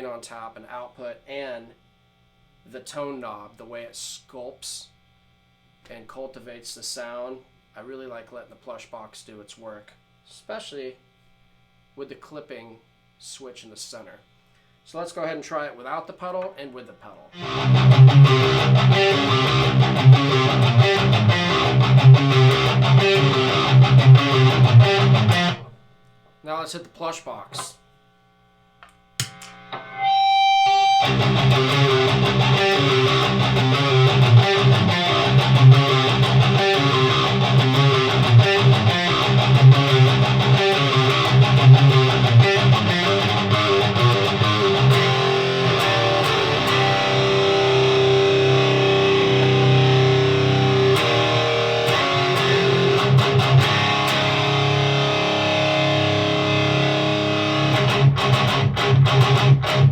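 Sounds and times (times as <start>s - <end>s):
distorted electric guitar riffing: 17.3s - 25.8s, 29.2s - 59.9s.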